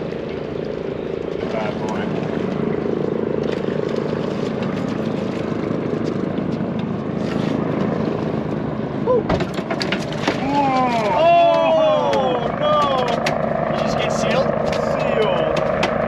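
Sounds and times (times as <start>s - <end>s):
boat engine running: 0.0s - 16.0s
water noise: 0.0s - 16.0s
wind: 0.0s - 16.0s.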